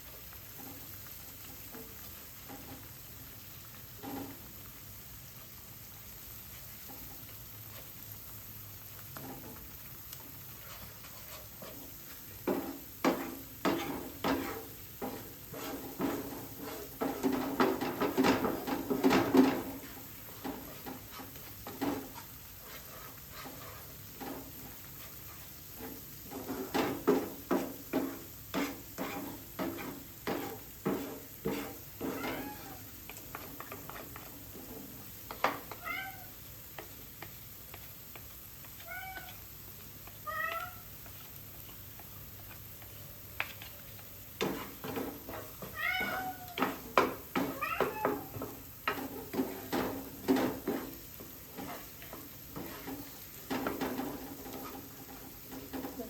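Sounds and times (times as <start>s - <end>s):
utensil scraping in a pot: 3.7s - 4.7s, 5.4s - 35.8s, 37.7s - 56.0s.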